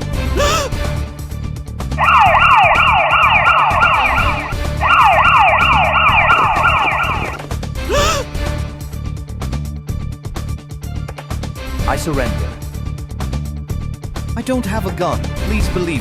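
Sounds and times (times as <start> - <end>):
police siren wailing: 2.0 - 7.5.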